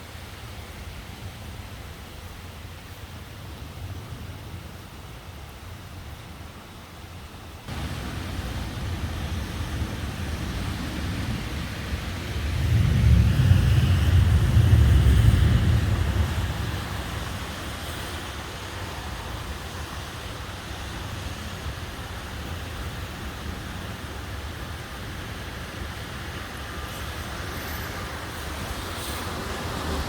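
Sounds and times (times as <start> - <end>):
wind and rain rushing: 0.0 - 30.0
thunder rumble: 7.7 - 19.0.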